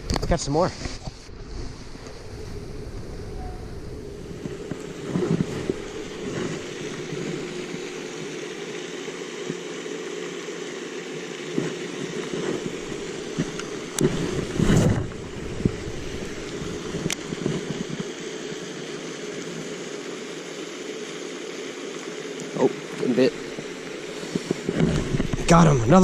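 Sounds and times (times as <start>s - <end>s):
wind on microphone: 0.0s - 8.0s, 12.2s - 18.0s, 23.4s - 26.0s.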